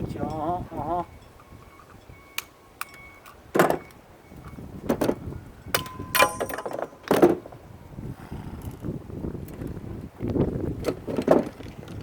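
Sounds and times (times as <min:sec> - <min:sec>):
metallic knocks from tools: 0:05.7 - 0:07.3.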